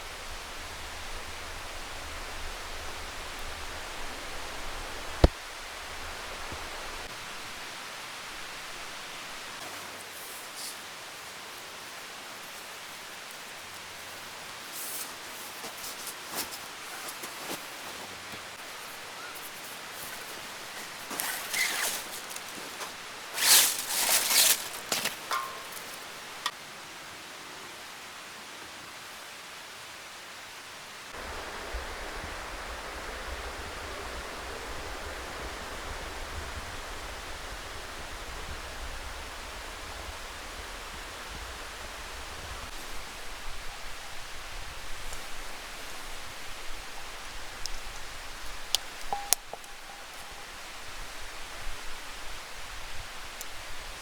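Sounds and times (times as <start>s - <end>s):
steady outdoor hiss: 0.0s - 54.0s
handling rustles and clicks: 12.4s - 26.5s.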